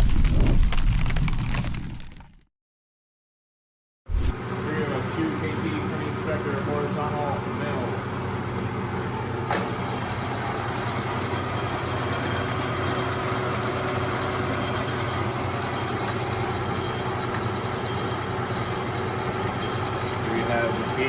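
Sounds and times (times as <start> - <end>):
milling machine humming: 4.4 - 21.0.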